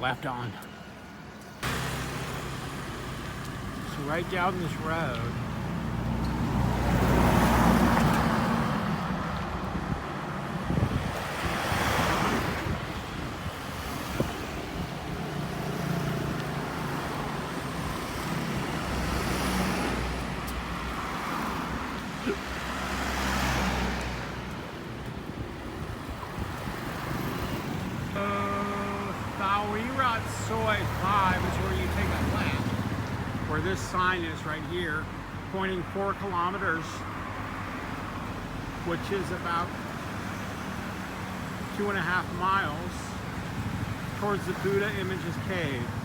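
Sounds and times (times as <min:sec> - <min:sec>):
road traffic passing: 0:00.0 - 0:46.0
wind noise on microphone: 0:09.0 - 0:15.7, 0:24.5 - 0:28.2.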